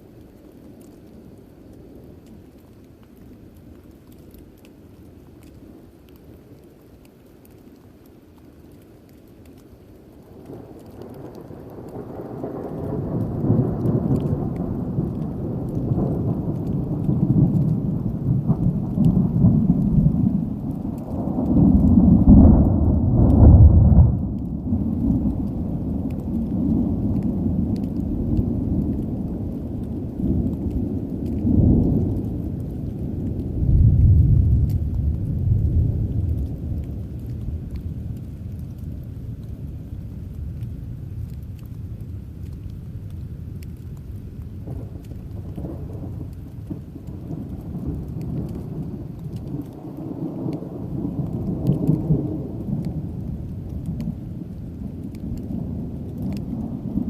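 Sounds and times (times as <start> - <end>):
rolling thunder: 10.5 - 39.9, 44.6 - 57.0.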